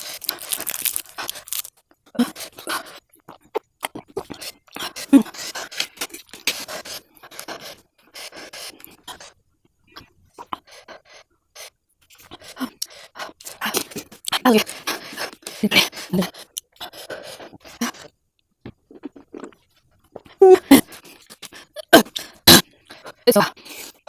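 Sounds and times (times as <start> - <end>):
person panting: 14.6 - 18.0.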